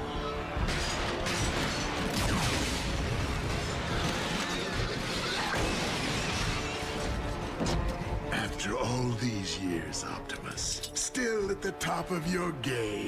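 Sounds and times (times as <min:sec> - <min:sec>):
background music: 0:00.0 - 0:13.0
weapon fire: 0:00.7 - 0:07.0.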